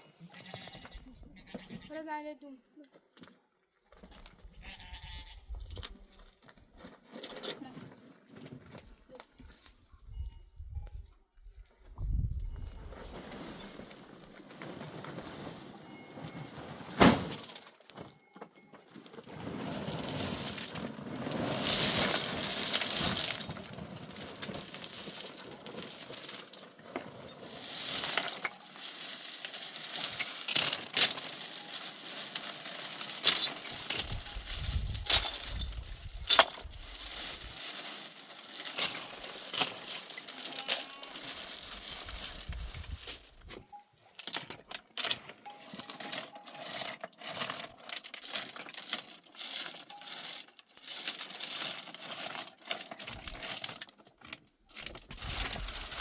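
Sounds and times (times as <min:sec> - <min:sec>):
objects clinking and knocking: 0:12.6 - 0:56.0.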